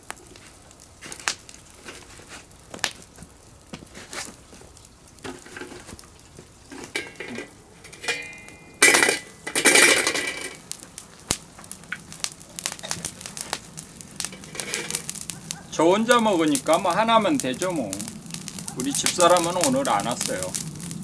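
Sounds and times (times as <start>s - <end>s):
scraping and rustling: 0.1s - 21.0s
metal cookware clinking: 6.7s - 10.6s.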